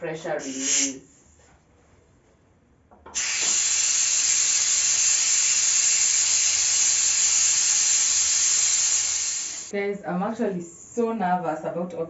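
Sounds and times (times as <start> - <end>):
pressure cooker steam hissing: 0.4 - 1.0, 3.1 - 9.8.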